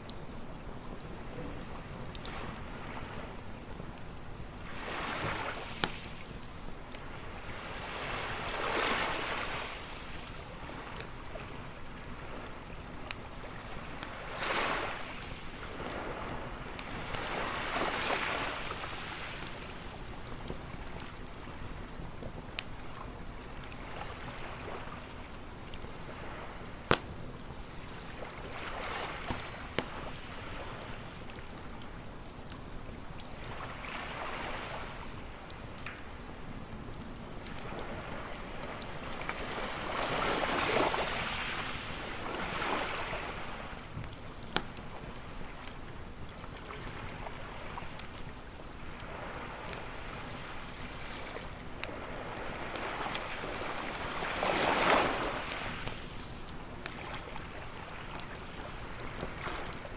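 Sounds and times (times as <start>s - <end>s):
campfire crackling: 0.0s - 59.9s
waves washing onto shore: 1.0s - 32.0s, 33.3s - 36.2s, 37.2s - 59.9s.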